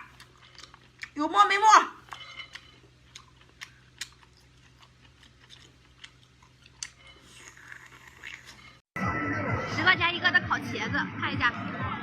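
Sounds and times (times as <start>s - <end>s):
person chewing food: 0.0s - 1.2s, 1.9s - 8.9s.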